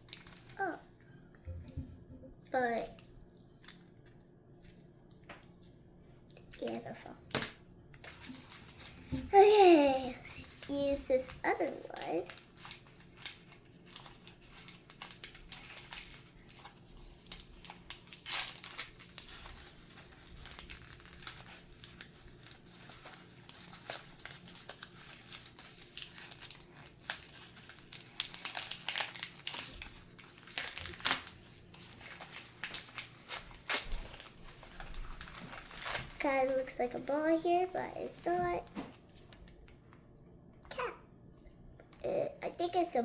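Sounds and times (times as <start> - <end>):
packaging tearing: 0.0 - 0.8, 6.6 - 37.2
packaging crinkling and rustling: 0.0 - 1.0, 6.6 - 39.6.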